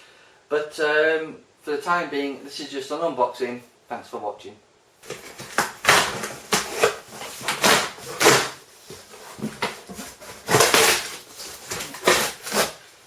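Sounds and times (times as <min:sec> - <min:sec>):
cardboard scraping and rustling: 0:05.0 - 0:12.8.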